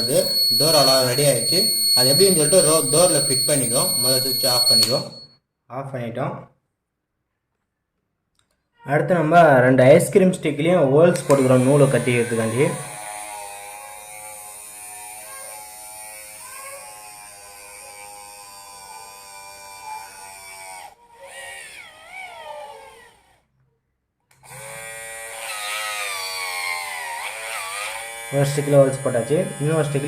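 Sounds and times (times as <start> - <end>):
electric drill whining: 0.0 - 5.2, 11.2 - 22.2, 24.4 - 30.0.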